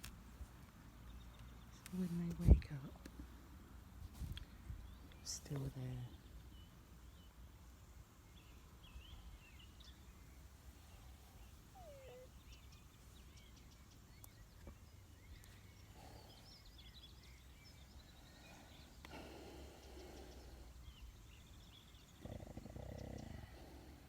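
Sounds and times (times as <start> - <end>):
distant bird chirps: 4.4 - 23.9
horse snoring: 11.4 - 12.3, 22.1 - 24.0.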